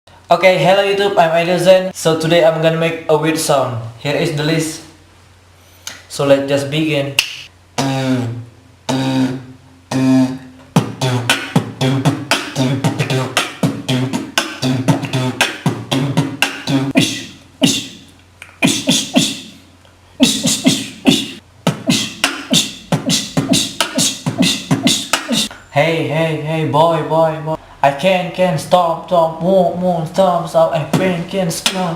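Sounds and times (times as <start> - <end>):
pitched vocal tones: 6.6 - 31.9
man beatboxing: 7.1 - 31.9.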